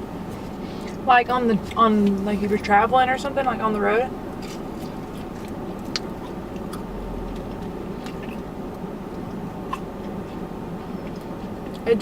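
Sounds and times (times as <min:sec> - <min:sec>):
low hum inside car: 0:00.0 - 0:12.0
person chewing food: 0:04.2 - 0:11.9
mouth clicks: 0:05.2 - 0:10.2.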